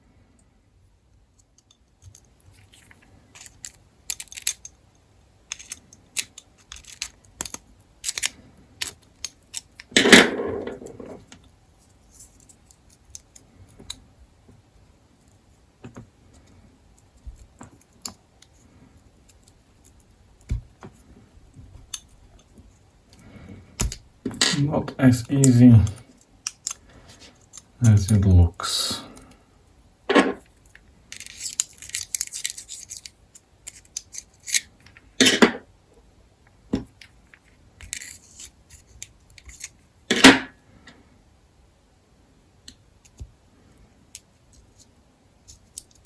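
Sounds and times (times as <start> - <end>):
pocket knife parts clicking: 3.4 - 4.7, 5.5 - 9.9, 26.4 - 26.8, 31.1 - 34.7.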